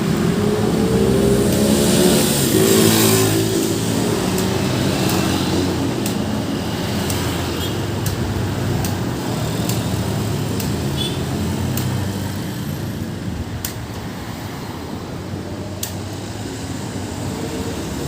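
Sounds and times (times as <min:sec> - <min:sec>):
sharp ticks: 0:03.6 - 0:12.5, 0:13.6 - 0:14.0.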